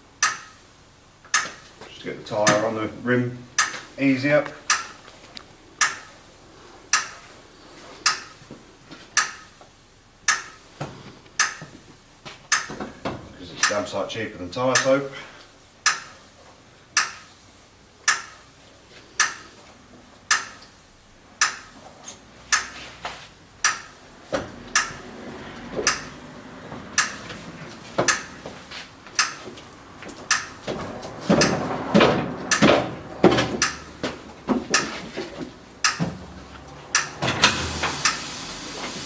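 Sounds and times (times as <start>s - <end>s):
metal tools clanking on wheel rim: 23.8s - 38.0s.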